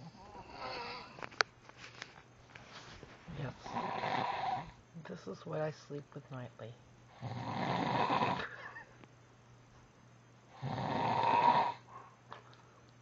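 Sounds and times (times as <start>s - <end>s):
man snoring loudly: 0.1s - 1.1s, 3.6s - 4.8s, 7.2s - 8.5s, 10.5s - 11.8s.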